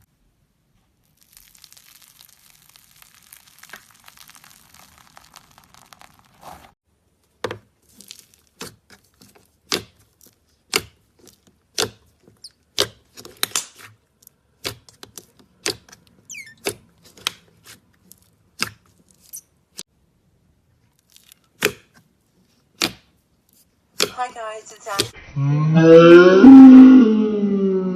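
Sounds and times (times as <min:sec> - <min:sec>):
crackly crinkling: 0:01.0 - 0:10.6, 0:20.8 - 0:21.6.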